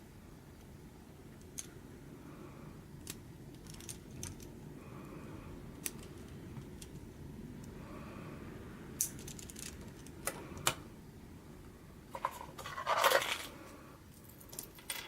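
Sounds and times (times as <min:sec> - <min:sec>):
plastic pieces clicking and rattling: 0:03.0 - 0:04.5, 0:09.0 - 0:10.8, 0:12.2 - 0:13.5.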